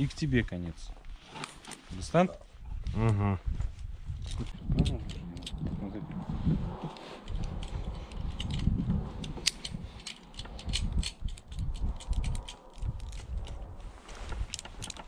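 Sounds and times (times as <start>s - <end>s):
low rumble: 2.6s - 15.0s
climbing hardware clinking: 7.2s - 13.6s, 14.3s - 15.0s.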